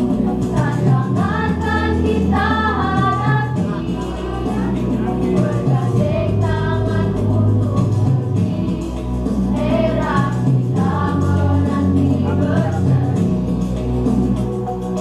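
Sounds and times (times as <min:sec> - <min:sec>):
choir singing: 0:00.0 - 0:13.4
instrumental backing music: 0:00.0 - 0:15.0.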